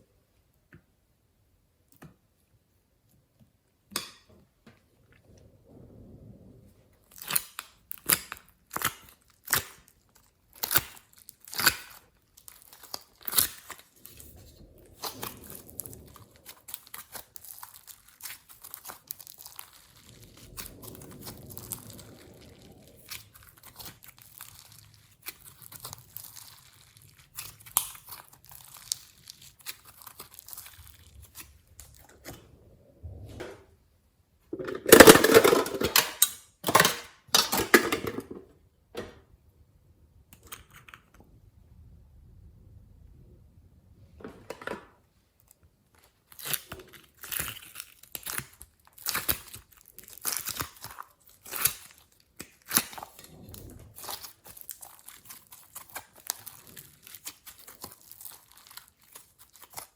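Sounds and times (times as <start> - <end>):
slime crackling and popping: 3.9 - 33.3, 45.4 - 59.9
crinkling: 3.9 - 39.4, 44.1 - 59.9
slime rustling: 4.8 - 35.8, 45.0 - 59.9.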